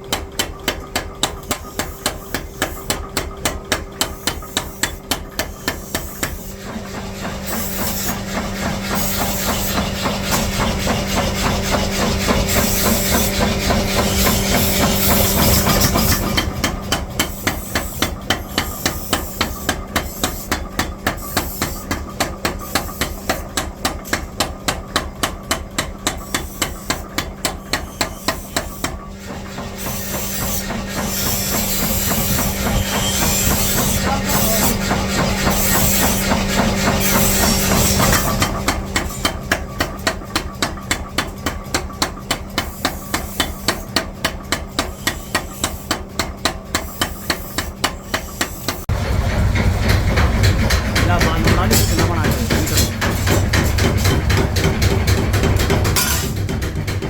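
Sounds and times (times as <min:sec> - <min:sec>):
machine hum: 0:00.0 - 0:20.0, 0:48.9 - 0:57.0
hammer on steel: 0:00.0 - 0:29.0, 0:49.8 - 0:57.0.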